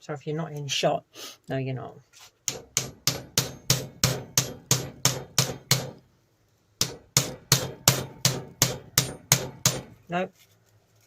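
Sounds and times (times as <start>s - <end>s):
hammer knocking on metal socket: 6.8s - 9.9s.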